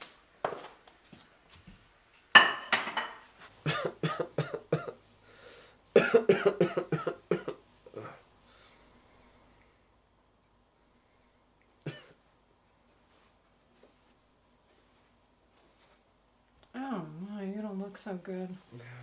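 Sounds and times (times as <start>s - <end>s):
person coughing: 3.6s - 5.0s, 6.0s - 8.2s, 11.9s - 12.2s.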